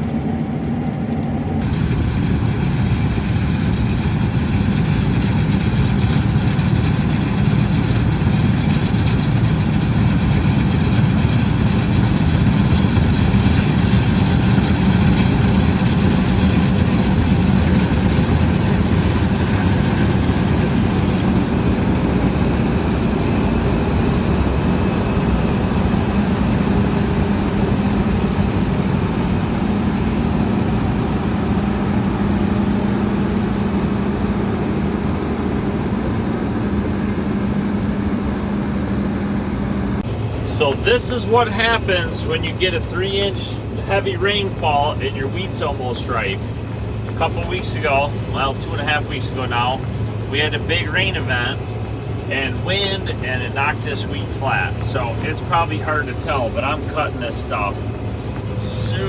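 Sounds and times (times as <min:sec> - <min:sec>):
combine harvester running: 0:00.0 - 0:59.0.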